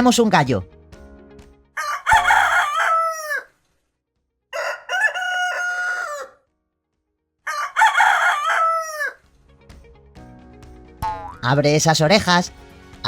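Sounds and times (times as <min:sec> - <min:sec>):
rooster crowing: 0:01.8 - 0:03.5, 0:04.5 - 0:06.4, 0:07.5 - 0:09.2.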